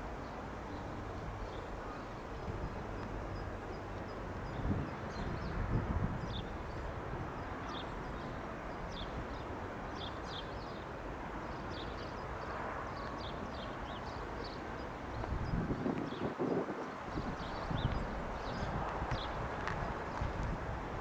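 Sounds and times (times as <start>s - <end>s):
wind buffeting microphone: 1.1s - 3.0s, 4.4s - 7.6s, 15.1s - 21.0s
steady outdoor rumble: 15.2s - 21.0s.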